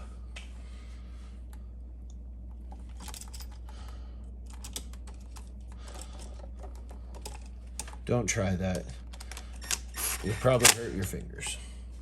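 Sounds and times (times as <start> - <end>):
steady low hum: 0.0 - 12.0
wires clicking and scraping: 2.1 - 11.1.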